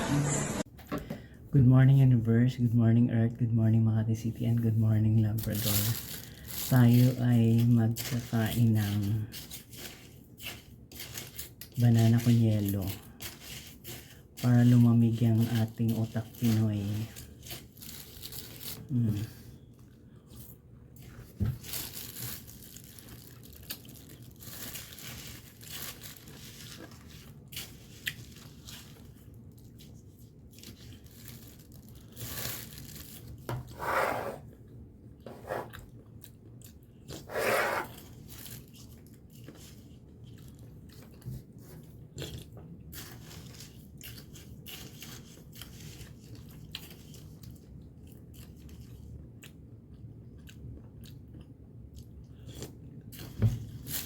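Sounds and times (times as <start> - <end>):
person chewing and crunching: 5.6 - 33.2, 35.6 - 54.0.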